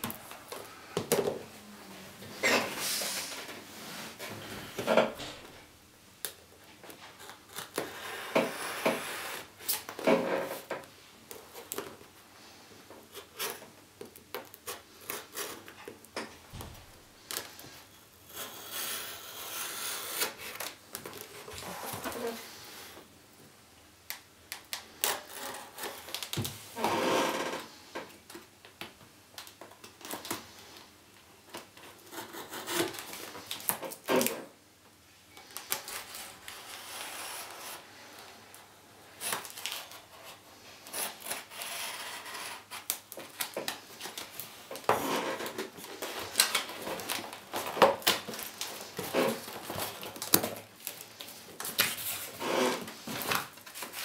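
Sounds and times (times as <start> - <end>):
cardboard and plastic rustling: 42.5 - 54.0.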